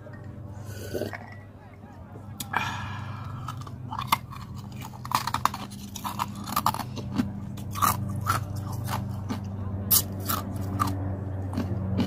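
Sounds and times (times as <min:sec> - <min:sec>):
steady low hum: 0:00.0 - 0:12.0
person chewing crunchy food: 0:02.5 - 0:12.0.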